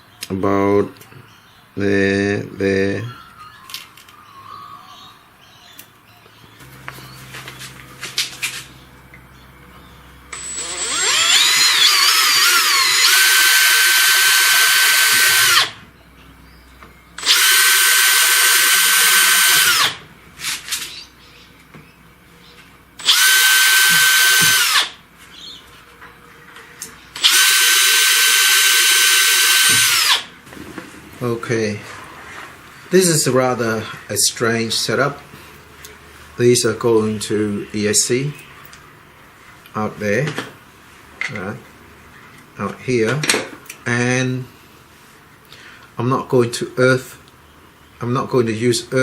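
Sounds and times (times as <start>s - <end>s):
power drill whine: 10.3s - 15.8s, 17.2s - 20.0s, 23.0s - 25.0s, 27.2s - 30.3s.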